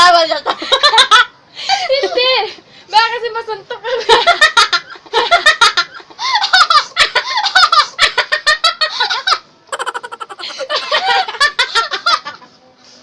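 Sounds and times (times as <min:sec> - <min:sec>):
women laughing: 0:00.4 - 0:02.5, 0:03.8 - 0:12.6.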